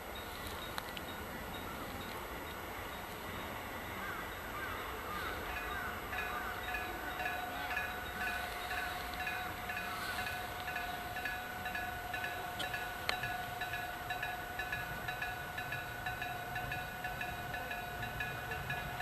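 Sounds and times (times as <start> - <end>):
level crossing bell ringing: 5.4 - 19.0.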